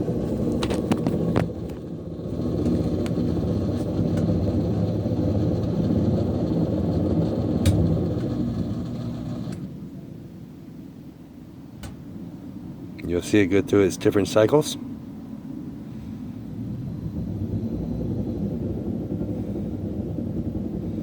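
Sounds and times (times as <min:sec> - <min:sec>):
washing machine hum: 0:00.0 - 0:09.8, 0:16.6 - 0:21.0.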